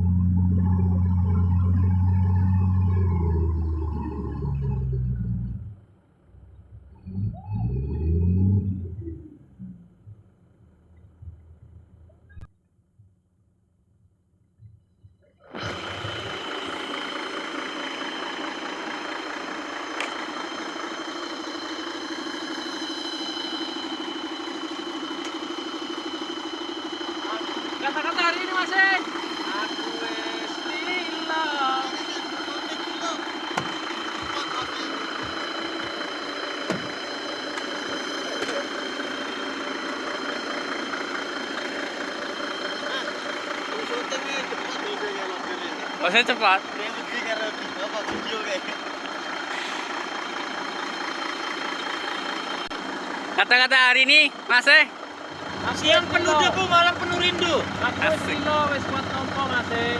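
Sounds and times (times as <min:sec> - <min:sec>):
heavy diesel engine running: 0:00.0 - 0:12.2, 0:15.5 - 0:59.9
high whine: 0:00.0 - 0:12.5, 0:15.5 - 0:48.9.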